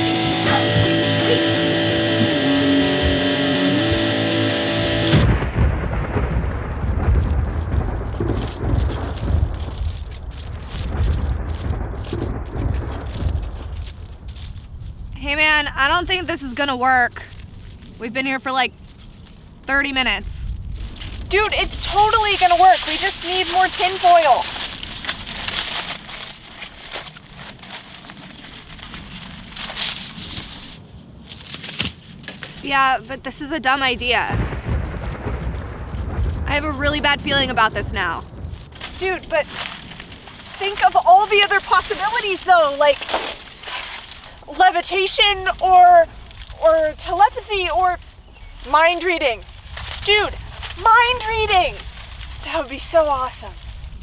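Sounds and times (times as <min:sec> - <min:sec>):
guitar-led music: 0:00.0 - 0:05.6
low rumble of thunder: 0:00.0 - 0:31.2, 0:32.5 - 0:54.0
rain falling: 0:00.0 - 0:31.2, 0:32.1 - 0:54.0
aluminium foil crinkling: 0:06.1 - 0:33.0, 0:33.7 - 0:54.0.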